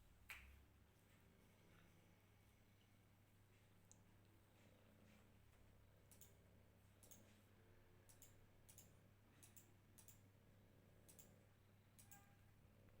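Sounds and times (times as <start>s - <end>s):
faint high-pitched clicks: 6.0s - 6.4s, 7.0s - 7.3s, 8.0s - 10.3s, 11.0s - 12.4s.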